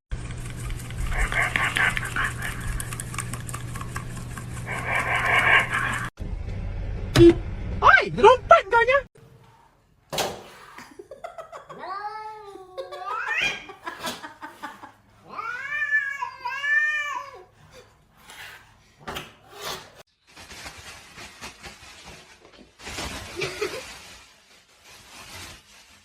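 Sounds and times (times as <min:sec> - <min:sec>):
cat meowing: 0:15.2 - 0:17.5.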